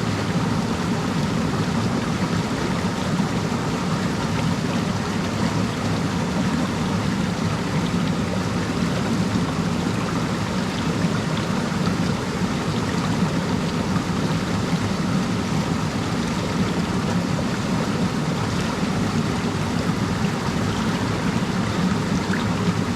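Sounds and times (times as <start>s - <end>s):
waterfall rushing: 19.4s - 22.9s.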